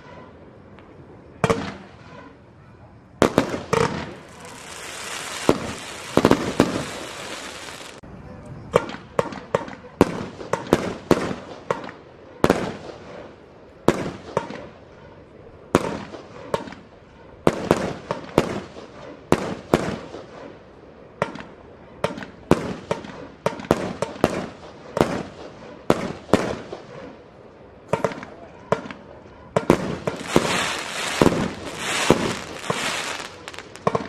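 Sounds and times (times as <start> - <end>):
fireworks banging: 3.2 - 8.0, 29.6 - 34.0.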